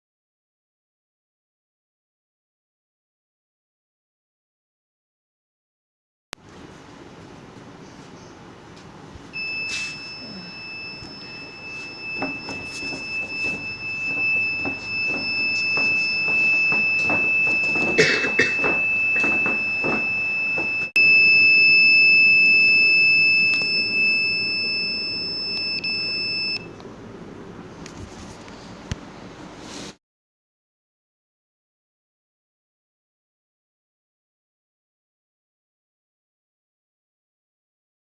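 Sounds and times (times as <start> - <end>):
high-pitched alarm buzzer tone: 9.4 - 26.7.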